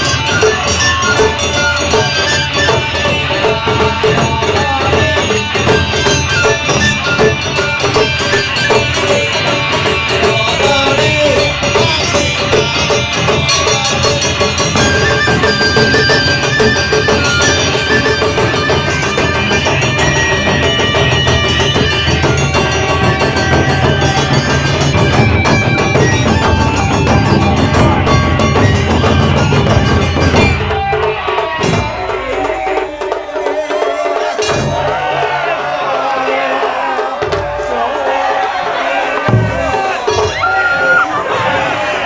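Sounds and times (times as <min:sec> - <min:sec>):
taiko drums beating: 0:00.0 - 0:42.0.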